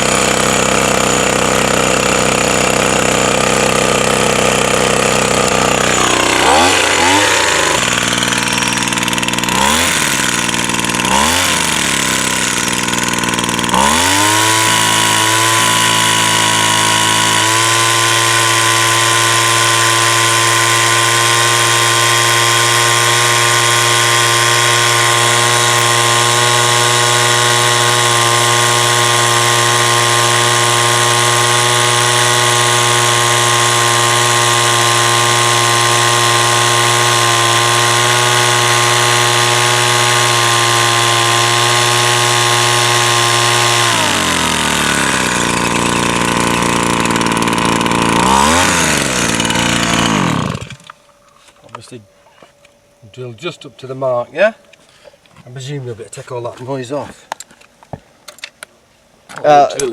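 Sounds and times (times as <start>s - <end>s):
small petrol engine running: 0.0s - 50.9s.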